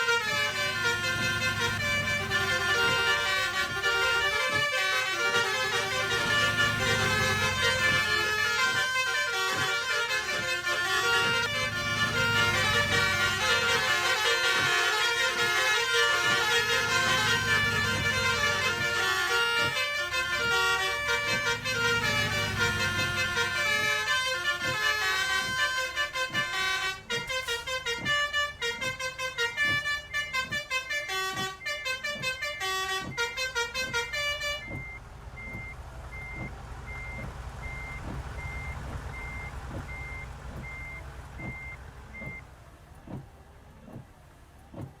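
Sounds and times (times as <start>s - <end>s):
multi-tone bus horn melody: 0.0s - 43.2s
bus engine running: 0.0s - 45.0s
faint short beeps: 34.6s - 42.4s.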